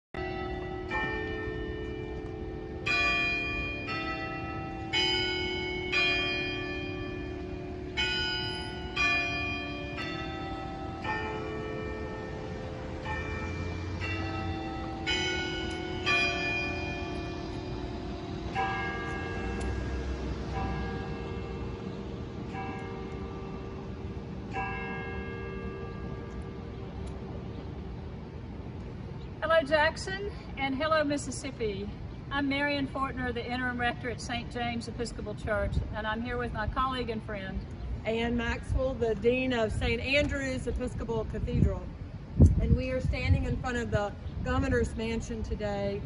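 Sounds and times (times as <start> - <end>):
bells ringing: 0.2 - 27.5.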